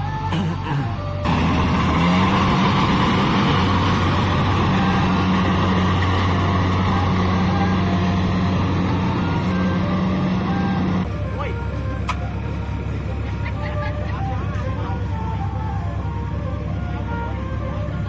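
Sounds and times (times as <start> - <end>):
combine harvester diesel engine: 0.0 - 18.0.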